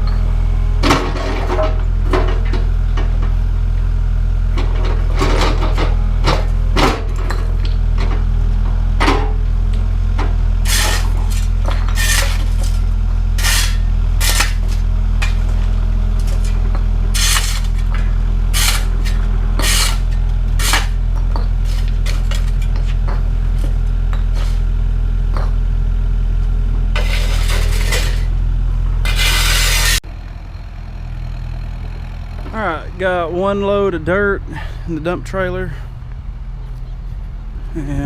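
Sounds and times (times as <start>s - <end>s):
excavator diesel engine running: 0.0s - 38.0s
steel bucket scraping bricks: 10.6s - 24.7s, 26.9s - 28.4s, 29.0s - 30.0s.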